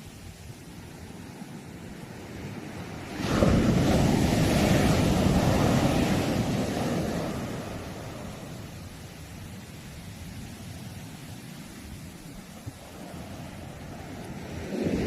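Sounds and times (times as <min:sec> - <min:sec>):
sea wave breaking on shore: 0:01.8 - 0:10.9, 0:11.5 - 0:15.0.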